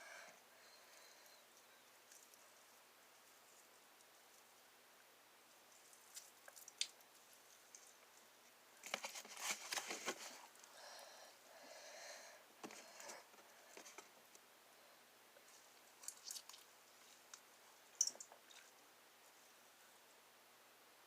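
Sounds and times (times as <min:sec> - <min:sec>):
soft slime rustle: 0:05.4 - 0:10.7, 0:15.4 - 0:20.2
slime squelching and crackling: 0:15.9 - 0:16.7.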